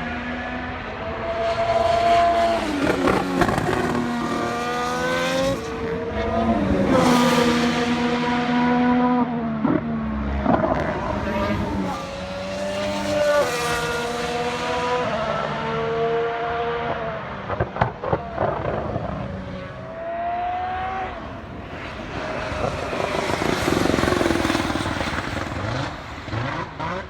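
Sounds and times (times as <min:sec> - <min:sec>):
racing car engine downshifting: 0:00.0 - 0:27.0
exhaust pops and crackles: 0:17.5 - 0:19.4.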